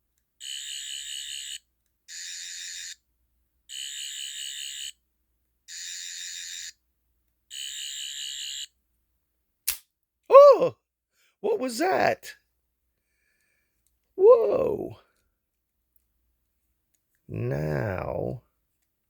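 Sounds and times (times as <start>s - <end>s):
toy electronic buzzing warble: 0.4s - 3.0s, 5.7s - 6.8s, 7.5s - 8.7s.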